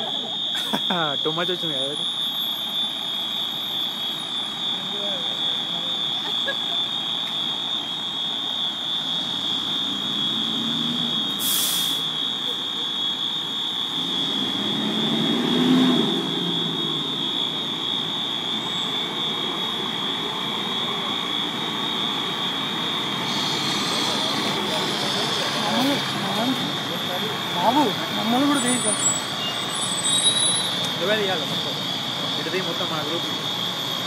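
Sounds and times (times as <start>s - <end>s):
fire alarm continuous tone: 0.0s - 34.0s
short hiss: 11.4s - 12.1s.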